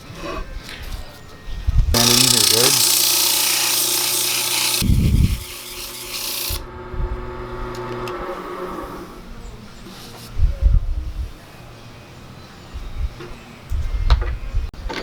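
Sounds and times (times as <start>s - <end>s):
wood lathe humming: 2.0s - 9.4s
hissing scrape of wood: 7.9s - 10.4s.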